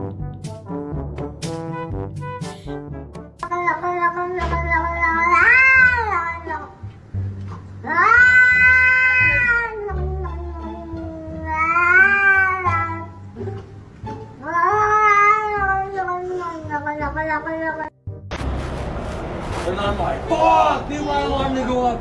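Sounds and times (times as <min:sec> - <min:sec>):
cat yowling: 0:03.5 - 0:06.6, 0:07.9 - 0:10.4, 0:11.2 - 0:13.0, 0:14.4 - 0:17.9
music playing: 0:18.3 - 0:22.0.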